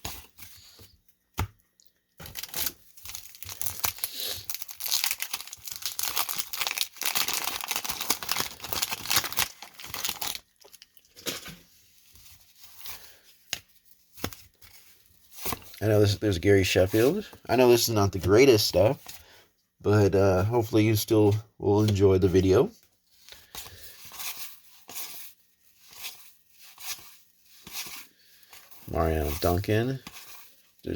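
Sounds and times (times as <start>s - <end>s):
wrapper tearing and crinkling: 2.2s - 11.3s.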